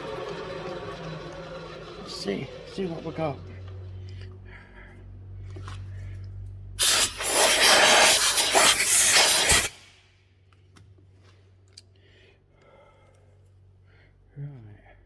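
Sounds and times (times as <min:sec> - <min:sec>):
machine motor hum: 0:00.0 - 0:04.0.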